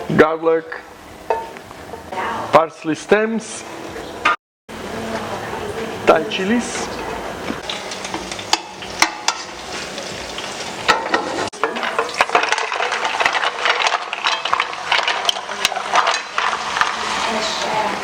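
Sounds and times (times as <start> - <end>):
oil sizzling in a frying pan: 7.6 - 18.0.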